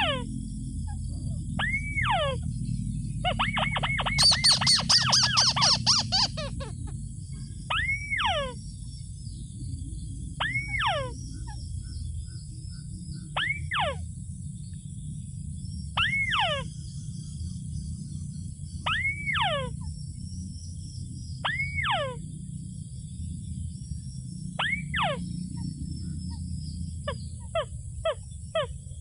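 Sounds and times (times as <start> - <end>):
steady low rumble: 0.0 - 29.0
bird lure call: 0.9 - 2.5, 3.2 - 8.7, 10.4 - 14.0, 16.0 - 16.8, 18.8 - 19.9, 21.4 - 22.2, 24.6 - 26.4.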